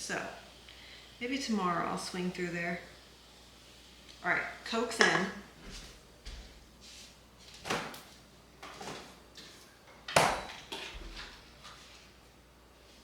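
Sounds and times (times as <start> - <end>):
kitchen items knocking and clunking: 10.0 - 11.4.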